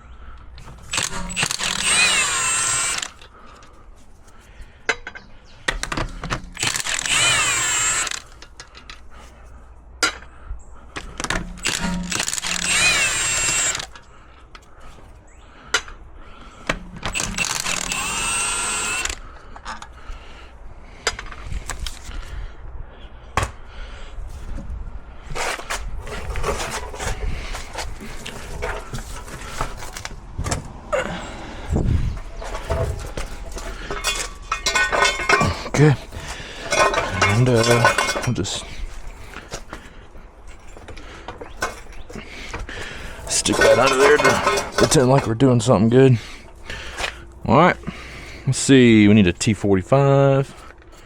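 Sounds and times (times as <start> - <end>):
impact wrench spinning bolts: 0.6 - 3.2, 5.7 - 8.6, 11.3 - 14.0, 16.7 - 19.2, 31.7 - 38.6.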